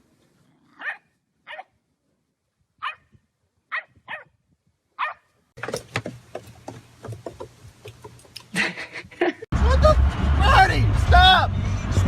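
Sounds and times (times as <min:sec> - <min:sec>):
dog barking: 0:00.8 - 0:01.7, 0:02.8 - 0:03.1, 0:03.7 - 0:04.3, 0:05.0 - 0:05.3.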